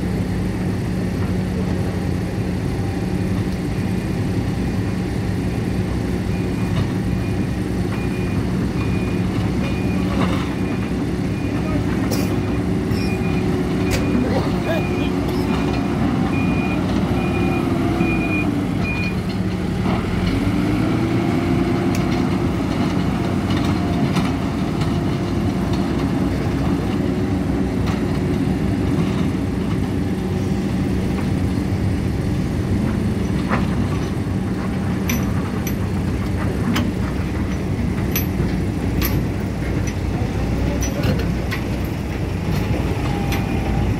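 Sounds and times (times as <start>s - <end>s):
backhoe diesel engine under load: 0.0s - 43.9s
reversing beeper: 12.4s - 19.2s
sharp clicks and knocks: 32.9s - 40.2s.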